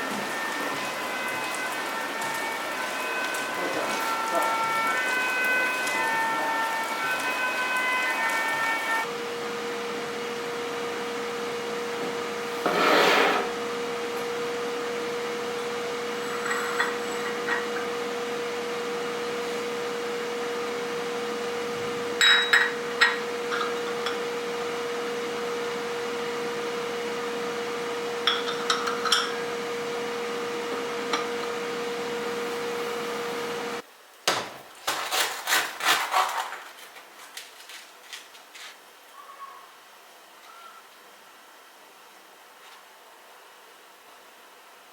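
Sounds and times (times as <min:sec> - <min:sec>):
appliance hum: 0:00.0 - 0:33.8.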